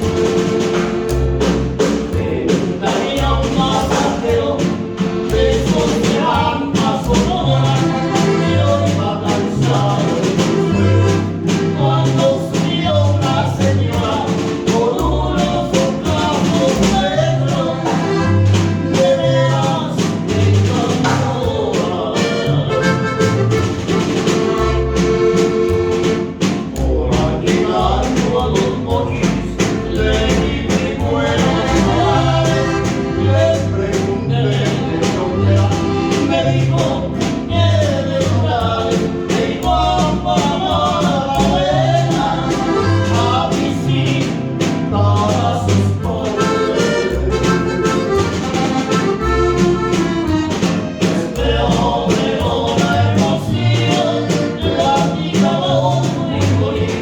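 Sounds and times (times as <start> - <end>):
person singing over a band: 0.0 - 25.0, 26.4 - 57.0
pulsing bass line: 22.4 - 48.4.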